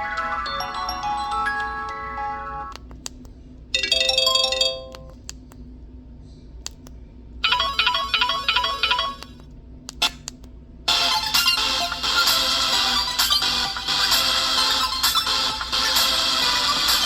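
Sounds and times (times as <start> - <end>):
phone ringtone chiming melody: 0.0 - 2.7, 3.8 - 5.2, 7.4 - 9.3
ringtone quickly repeating notes: 0.0 - 2.7, 3.8 - 5.2, 7.4 - 9.4.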